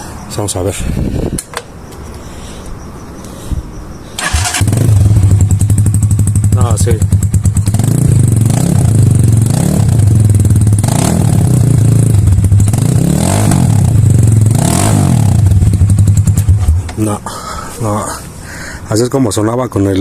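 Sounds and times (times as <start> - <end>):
motorcycle throttle blips: 4.2 - 17.0
loud motorcycle engine running: 4.3 - 16.9.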